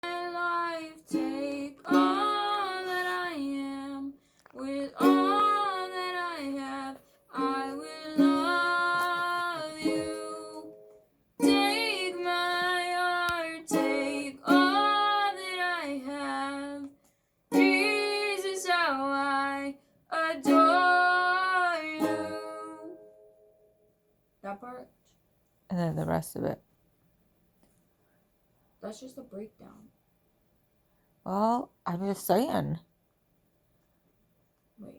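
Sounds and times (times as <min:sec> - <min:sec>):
ukulele strumming chords: 0:00.0 - 0:04.0, 0:04.6 - 0:16.8, 0:17.5 - 0:19.6, 0:20.2 - 0:23.5
person singing: 0:00.0 - 0:10.8, 0:11.4 - 0:16.9, 0:17.5 - 0:23.0.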